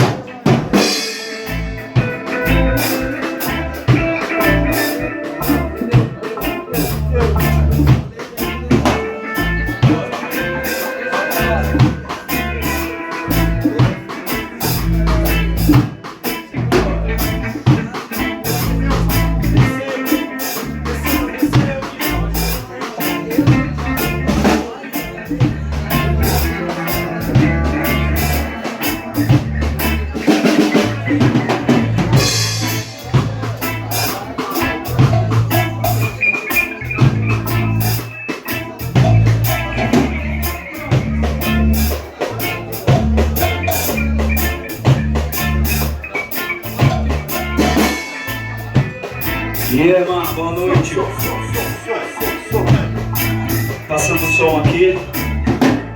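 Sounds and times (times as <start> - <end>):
drum kit beat: 0.0 - 55.9
low bass notes: 0.8 - 19.8, 20.6 - 55.9.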